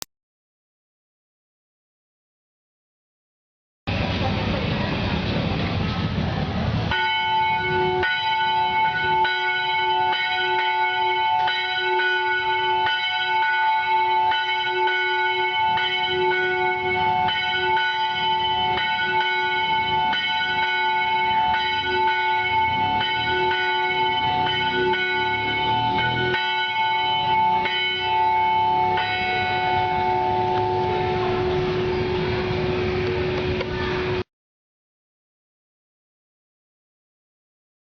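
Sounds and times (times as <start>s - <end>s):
church bell ringing: 6.9s - 34.2s.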